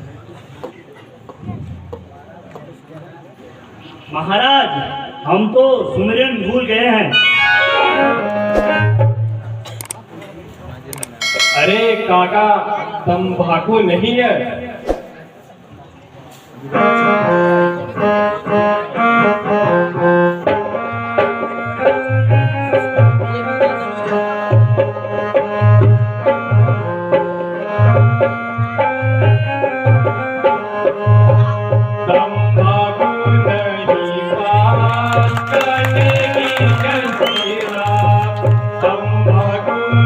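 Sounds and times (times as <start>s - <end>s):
reedy melody: 7.0s - 9.3s, 11.0s - 13.4s
high metallic shimmer: 11.2s - 12.7s.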